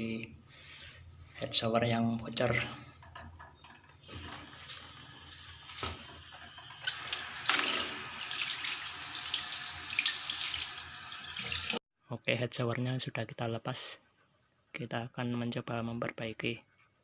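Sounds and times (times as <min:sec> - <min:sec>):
water running and splashing: 0:04.0 - 0:11.8.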